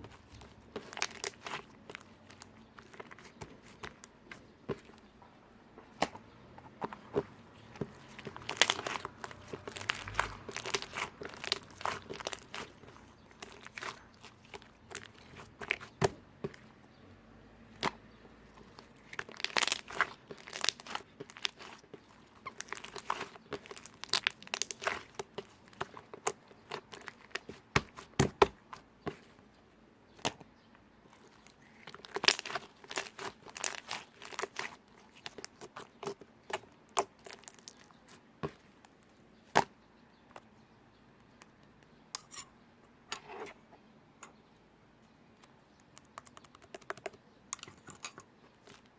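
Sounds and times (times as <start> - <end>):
slime squishing: 0.0 - 5.1, 5.8 - 16.8, 17.6 - 29.4, 31.1 - 38.8.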